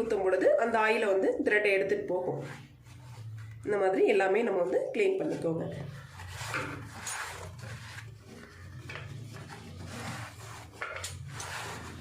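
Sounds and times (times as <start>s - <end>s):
scratchy rubbing strokes: 5.2s - 12.0s.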